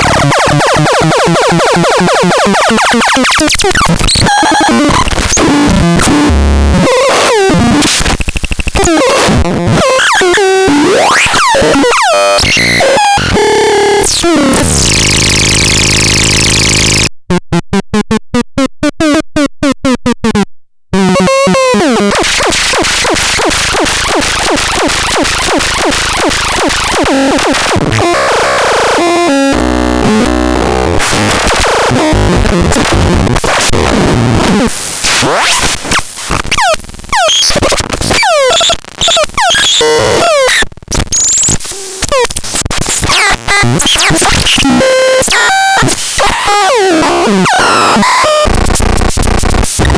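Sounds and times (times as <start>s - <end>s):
harsh electronic synthesizer sweeps: 0.0s - 17.1s, 21.0s - 35.8s, 36.5s - 41.5s, 43.1s - 49.9s.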